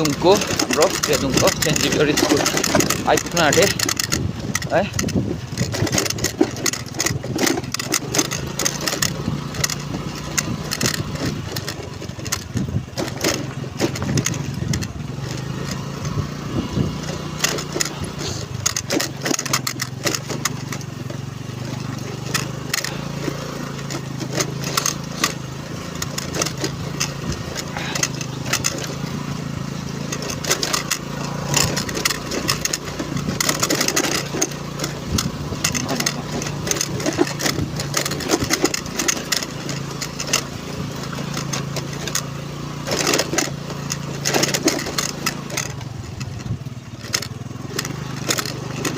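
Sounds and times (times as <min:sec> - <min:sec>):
knocks and rattles from road: 0:00.0 - 0:48.9
scooter engine running: 0:00.0 - 0:48.9.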